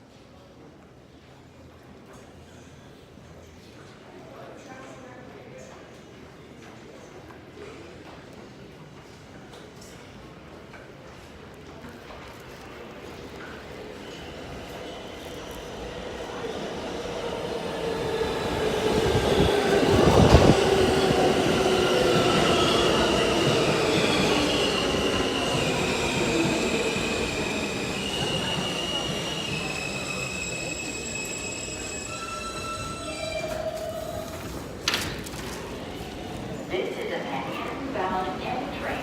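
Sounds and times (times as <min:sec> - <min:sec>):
train wheels squealing on rails: 0:21.2 - 0:34.3.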